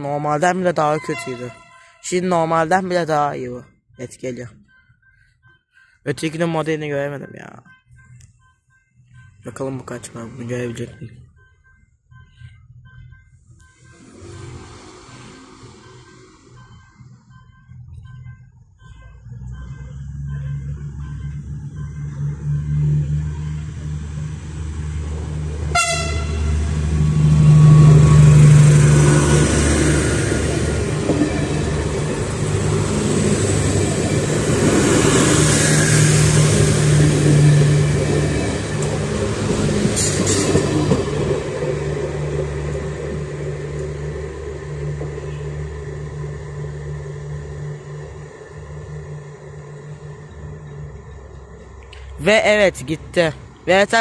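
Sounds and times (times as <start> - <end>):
diesel train engine drone: 0.0 - 54.0
wheels rushing on rails: 13.6 - 17.9, 18.8 - 54.0.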